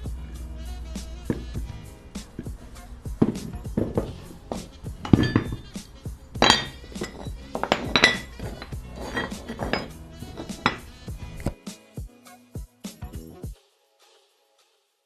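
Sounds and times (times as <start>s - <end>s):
music with metallic percussive hits: 0.9s - 11.6s.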